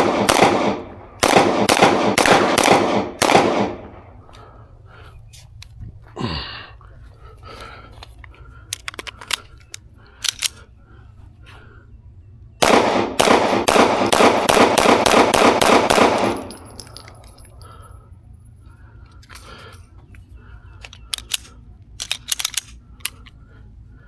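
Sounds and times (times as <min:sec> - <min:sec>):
pistol shots: 0:00.0 - 0:04.3, 0:12.6 - 0:17.0
sharp clicks: 0:08.0 - 0:10.7, 0:19.1 - 0:23.4.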